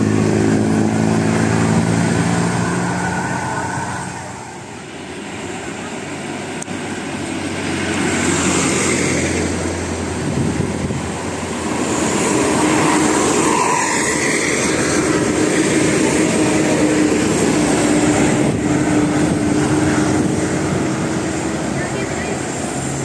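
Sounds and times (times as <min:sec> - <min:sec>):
buses passing by: 0:00.0 - 0:23.0.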